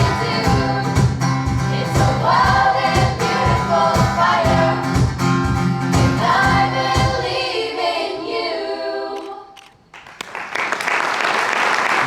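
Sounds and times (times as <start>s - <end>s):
group of voices singing: 0.0s - 9.7s
applause: 9.9s - 12.0s.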